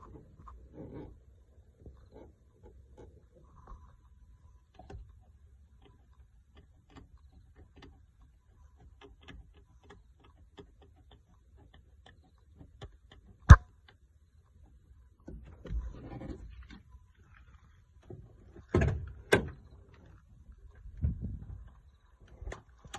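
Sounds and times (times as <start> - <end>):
light clicks and taps: 4.7 - 15.6.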